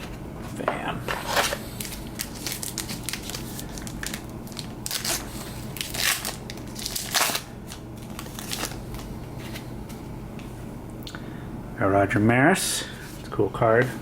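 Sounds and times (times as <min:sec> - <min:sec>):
trading cards rustling and snapping: 0:05.8 - 0:09.6.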